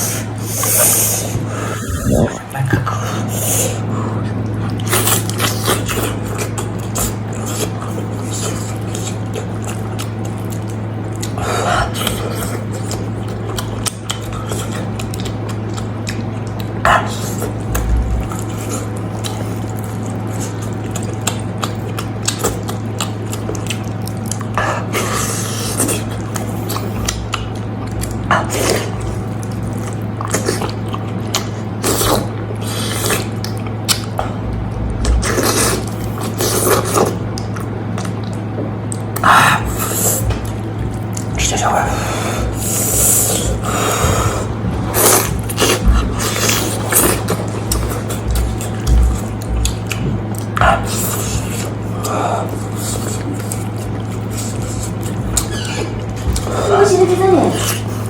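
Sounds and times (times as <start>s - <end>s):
steady low hum: 0.0s - 58.0s
wet chewing and slurping: 0.0s - 58.0s.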